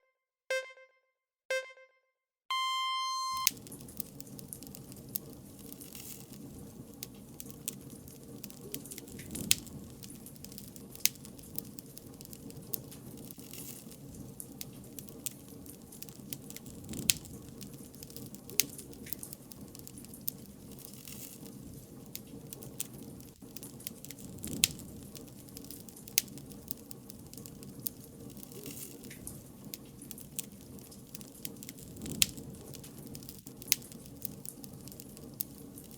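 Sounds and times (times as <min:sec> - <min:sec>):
electronic countdown beeps: 0:00.0 - 0:03.5
bonfire crackling and popping: 0:03.4 - 0:35.9.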